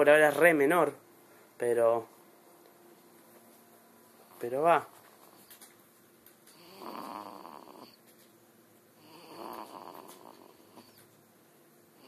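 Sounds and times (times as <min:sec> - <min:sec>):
soft snoring with high whistle: 0:06.6 - 0:08.0, 0:09.0 - 0:11.0.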